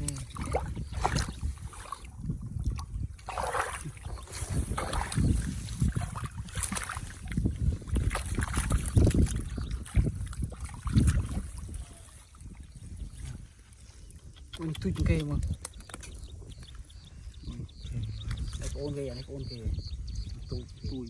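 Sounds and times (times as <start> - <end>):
water splashing: 0.0 - 12.7
wind on microphone: 0.0 - 21.0.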